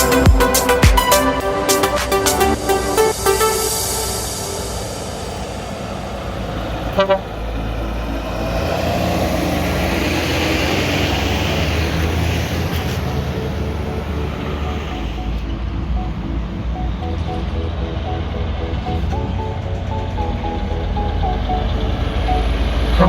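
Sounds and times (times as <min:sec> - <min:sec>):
truck engine rumble driving by: 0:00.0 - 0:23.0
truck horn toots: 0:06.9 - 0:07.6.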